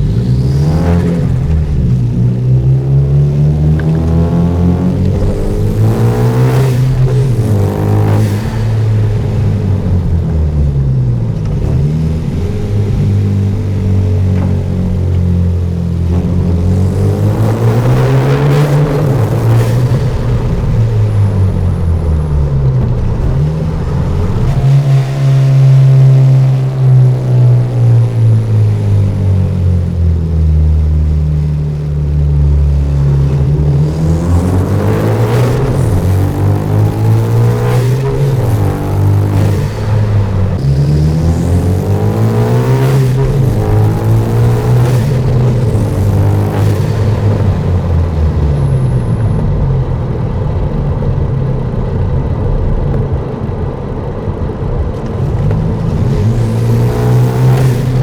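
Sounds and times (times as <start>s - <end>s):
car engine revving: 0.0s - 58.0s
faint high turbo whistle: 23.2s - 28.0s.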